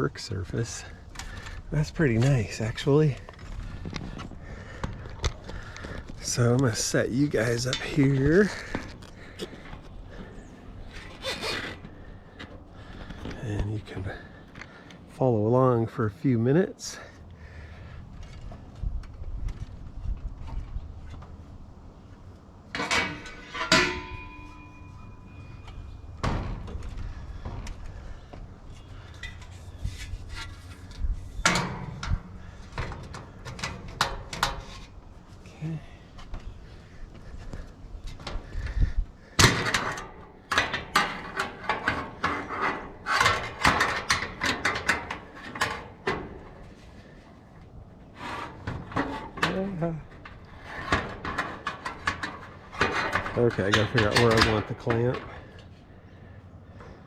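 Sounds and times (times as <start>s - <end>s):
steel parts clanking: 6.2s - 9.0s, 22.7s - 26.7s, 48.2s - 55.6s
metal parts clicking and scraping: 22.7s - 27.9s, 39.4s - 46.9s, 48.2s - 55.8s
metallic ring: 23.0s - 26.3s.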